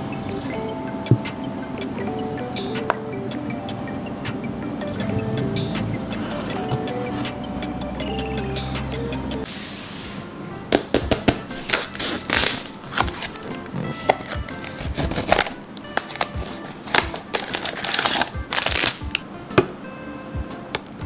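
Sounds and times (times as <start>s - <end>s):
soft background music: 0.0s - 21.0s
packaging rustling: 11.5s - 19.2s.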